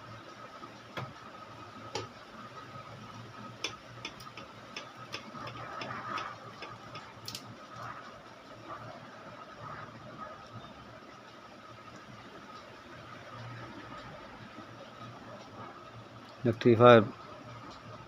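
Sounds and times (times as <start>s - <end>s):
hand tools tapping circuit board: 3.6s - 7.4s.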